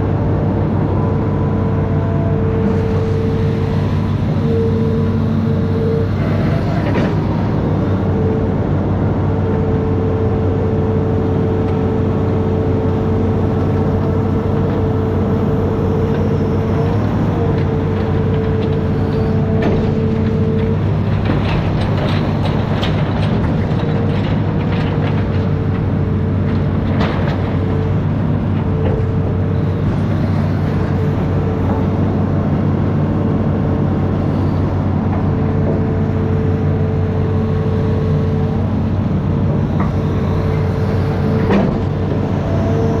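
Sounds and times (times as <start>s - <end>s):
diesel engine running: 0.0s - 43.0s
knocks and clanks: 17.9s - 29.2s, 41.4s - 42.0s.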